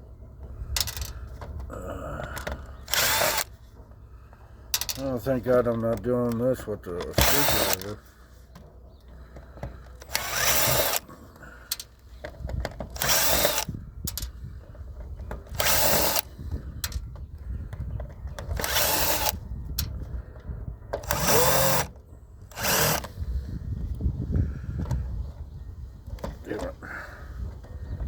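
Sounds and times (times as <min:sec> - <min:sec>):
plastic clicks and clatter: 0:00.7 - 0:03.5, 0:04.7 - 0:05.1
power drill motor runs: 0:02.4 - 0:03.6, 0:07.0 - 0:08.3, 0:09.1 - 0:11.9, 0:12.8 - 0:13.8, 0:15.4 - 0:16.7, 0:18.4 - 0:20.3, 0:21.0 - 0:23.5.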